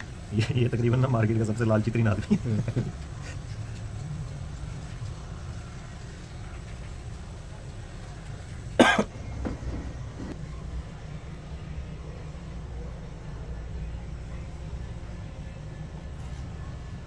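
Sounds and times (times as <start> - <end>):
steady low hum: 0.0 - 17.0
person coughing: 8.8 - 10.3.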